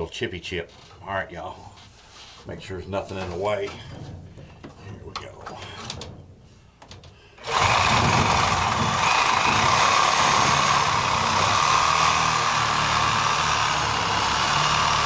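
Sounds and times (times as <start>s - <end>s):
reciprocating saw cutting pipe: 7.4s - 15.0s.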